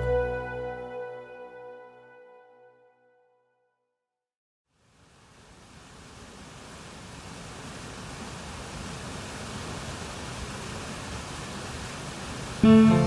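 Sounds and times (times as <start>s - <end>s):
rushing water: 4.8s - 13.0s.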